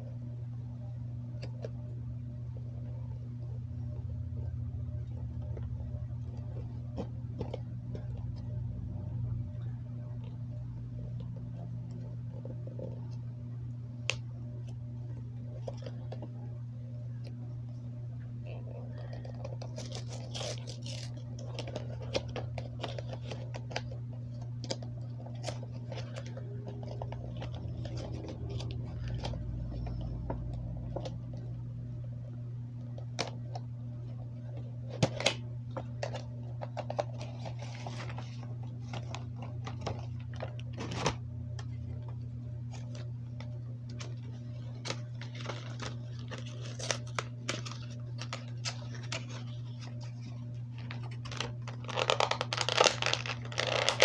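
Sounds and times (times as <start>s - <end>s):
steady low hum: 0.0s - 54.0s
packaging being opened: 19.0s - 31.4s, 43.9s - 54.0s.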